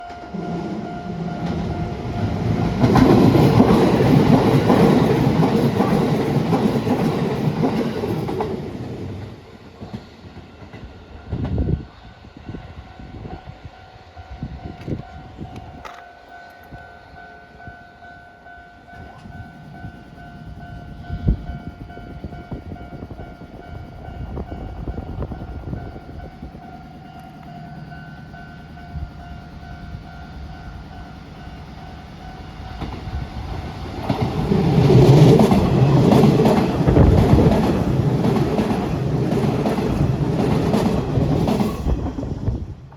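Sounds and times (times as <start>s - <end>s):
two-tone crossing warning bell: 0.0s - 7.8s, 11.1s - 40.9s
electric train rumble: 0.0s - 42.9s
wheels clattering over rail joints: 32.6s - 42.4s.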